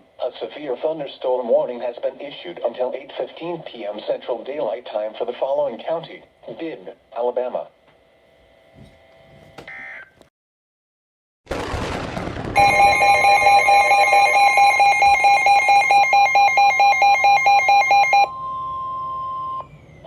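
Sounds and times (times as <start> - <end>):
buzzy alarm beeping: 12.6 - 19.8
steady high warning tone: 12.6 - 20.0.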